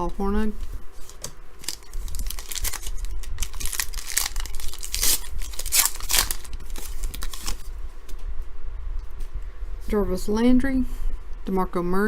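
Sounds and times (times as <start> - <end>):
wrapper tearing and crinkling: 1.6 - 7.7.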